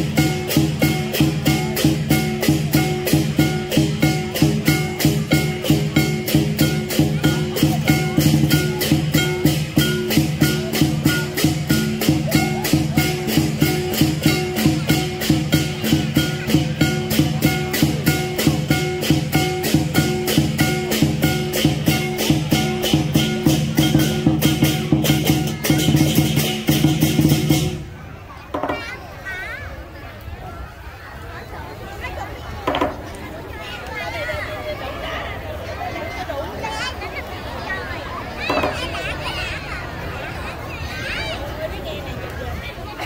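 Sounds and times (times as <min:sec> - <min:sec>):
cymbals clashing: 0:00.0 - 0:28.0
big drum beating: 0:00.0 - 0:28.9.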